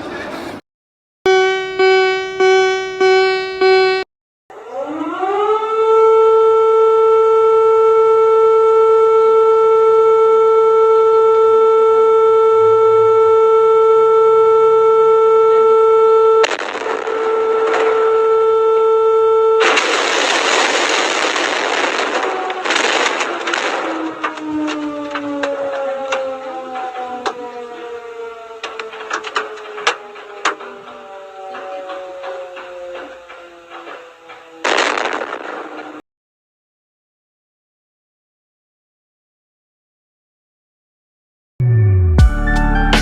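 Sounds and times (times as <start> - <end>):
rapid beeps: 1.3 - 4.0
warning siren wailing: 1.3 - 36.0.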